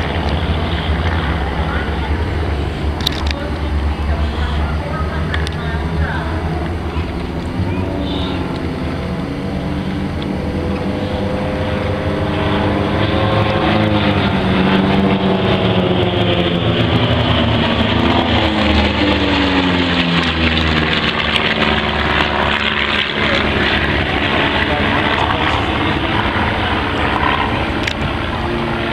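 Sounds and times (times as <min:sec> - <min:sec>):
propeller airplane flying past: 0:00.0 - 0:28.9.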